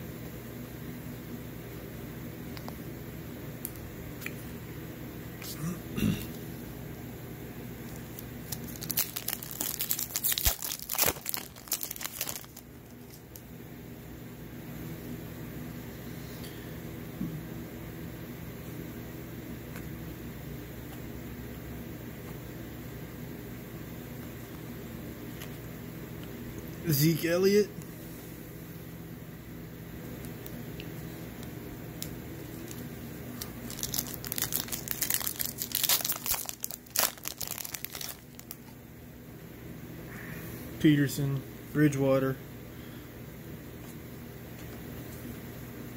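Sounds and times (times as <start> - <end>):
wrapper crinkling and tearing: 7.9 - 13.4, 32.0 - 38.8.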